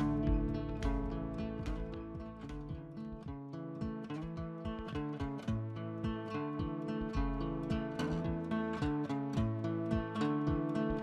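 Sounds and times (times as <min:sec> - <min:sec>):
bass line: 0:00.0 - 0:03.2
acoustic guitar playing: 0:00.0 - 0:11.0.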